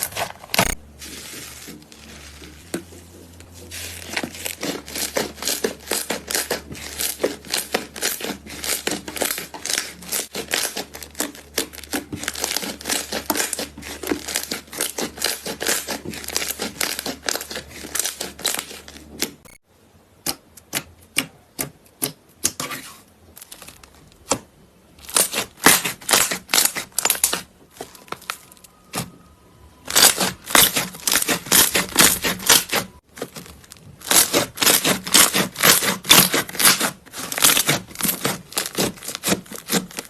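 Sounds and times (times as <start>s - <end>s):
slime crackling and popping: 29.9s - 40.0s.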